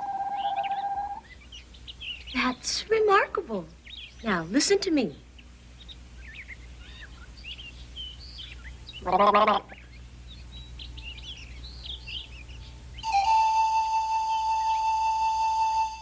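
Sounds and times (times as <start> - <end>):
loud held bird call: 0.0 - 1.4
small birds chirping: 0.0 - 16.0.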